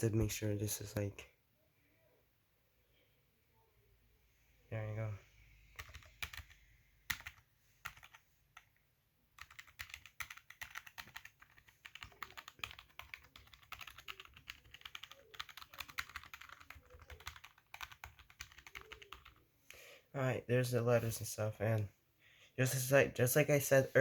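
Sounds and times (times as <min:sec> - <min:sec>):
keyboard keys clicking: 0:05.8 - 0:08.7, 0:09.4 - 0:19.4.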